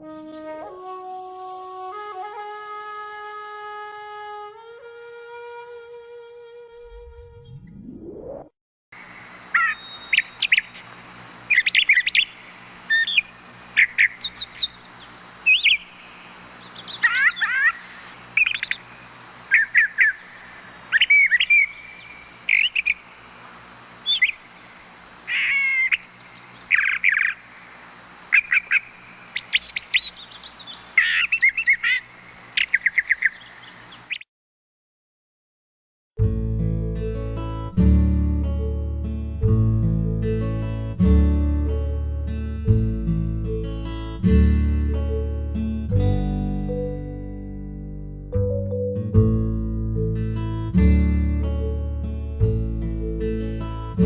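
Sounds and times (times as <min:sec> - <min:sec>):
bird singing: 0:09.0 - 0:23.2, 0:24.0 - 0:34.2.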